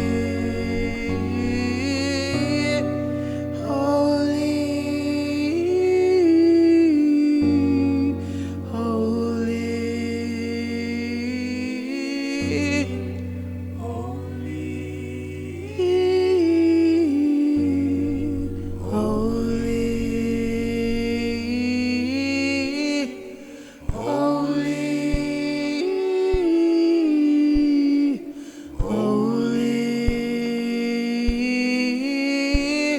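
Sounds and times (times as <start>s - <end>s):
sustained low accompaniment: 0.0s - 6.4s, 17.6s - 22.8s
wordless singing: 0.0s - 32.9s.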